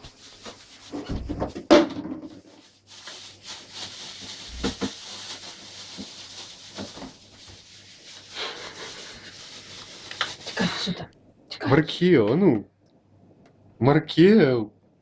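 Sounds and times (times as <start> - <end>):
rustling: 0.0 - 10.7
faint steady hum: 0.0 - 15.0.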